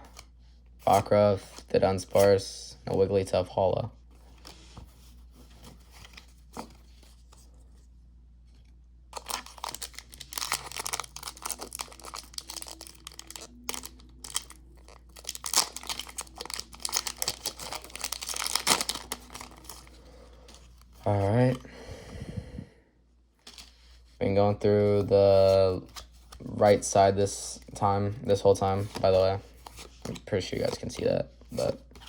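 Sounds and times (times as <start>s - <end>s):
foil wrapper tearing and crinkling: 9.2s - 19.9s.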